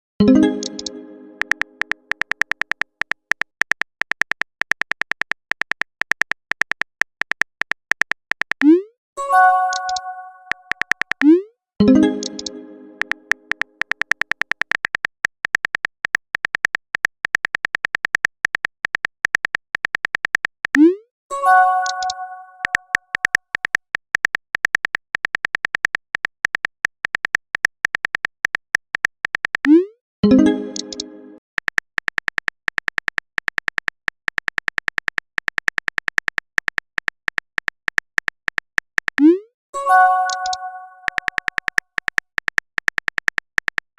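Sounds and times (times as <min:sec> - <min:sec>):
message chime: 0:00.2 - 0:01.8, 0:09.2 - 0:10.7, 0:11.8 - 0:13.5, 0:21.3 - 0:22.8, 0:30.2 - 0:31.4, 0:39.8 - 0:41.2
rapid keyboard tap clicks: 0:00.6 - 0:08.6, 0:09.8 - 0:11.2, 0:12.2 - 0:20.9, 0:21.8 - 0:29.8, 0:31.6 - 0:39.2, 0:40.3 - 0:43.9.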